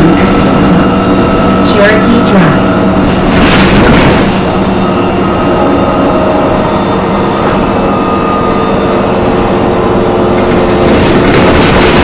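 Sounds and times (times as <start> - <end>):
bus diesel engine rumbling: 0.0 - 12.0
steady multi-tone whine: 0.0 - 12.0.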